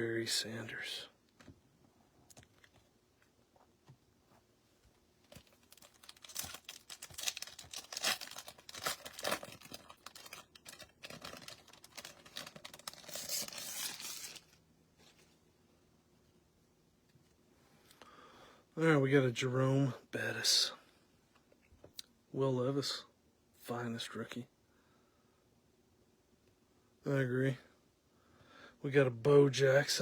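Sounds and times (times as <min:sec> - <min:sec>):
foil wrapper tearing and crinkling: 0:05.3 - 0:14.6.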